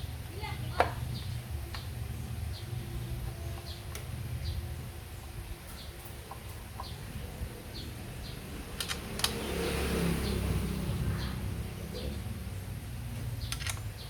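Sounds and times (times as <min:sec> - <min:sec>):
low steady hum: 0:00.0 - 0:09.5
sharp clicks: 0:08.8 - 0:09.5, 0:13.4 - 0:14.0.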